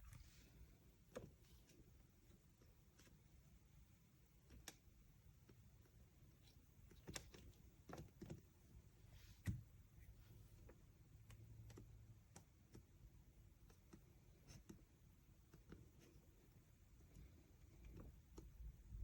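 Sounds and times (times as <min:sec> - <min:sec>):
faint clicks and taps: 0:01.0 - 0:03.3, 0:04.4 - 0:08.6, 0:10.6 - 0:19.0.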